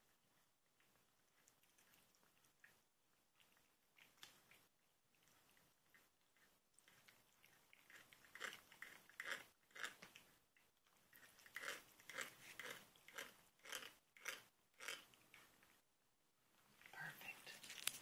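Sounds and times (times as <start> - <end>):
cat grinding teeth: 3.4 - 15.7.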